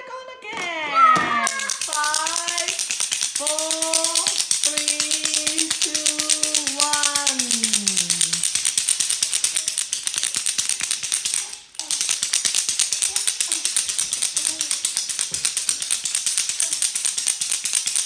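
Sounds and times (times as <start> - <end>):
fast rattling clatter: 1.4 - 18.0
faint voices: 3.4 - 8.5.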